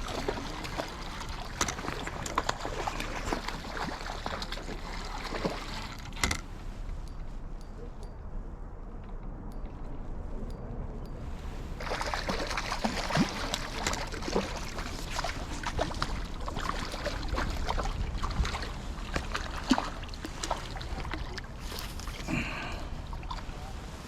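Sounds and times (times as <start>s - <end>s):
water splashing in a river: 0.0s - 6.3s, 11.6s - 24.0s.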